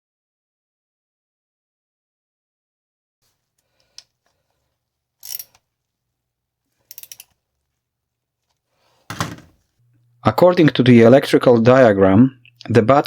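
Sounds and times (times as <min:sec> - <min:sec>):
hand tools clicking and ratcheting: 0:05.2 - 0:05.6, 0:06.8 - 0:07.4.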